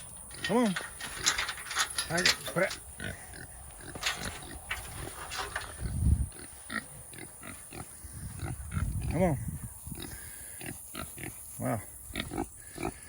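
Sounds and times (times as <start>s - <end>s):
pig grunting: 0.0s - 4.8s, 10.0s - 13.0s
rustling: 0.0s - 6.8s.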